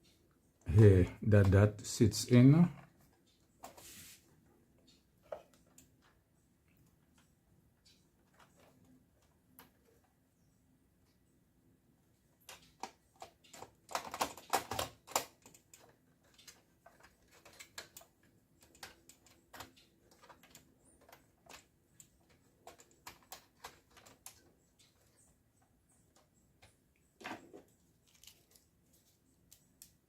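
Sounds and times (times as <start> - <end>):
plastic and metal parts clicking: 12.4 - 30.0.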